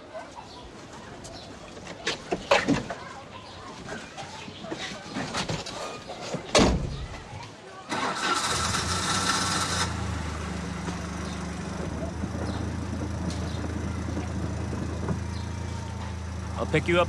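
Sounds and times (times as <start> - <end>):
car engine running: 9.2 - 17.0.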